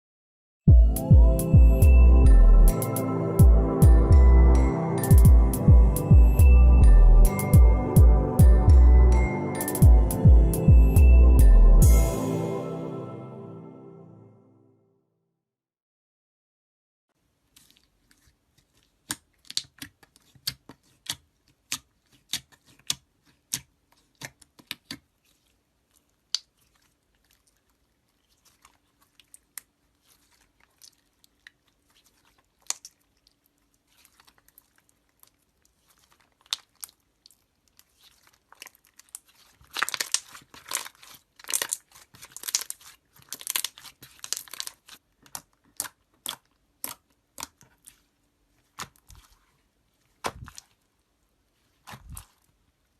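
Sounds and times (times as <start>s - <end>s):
slime squishing with wet pops: 17.3s - 52.9s
slime crackling: 17.4s - 52.6s.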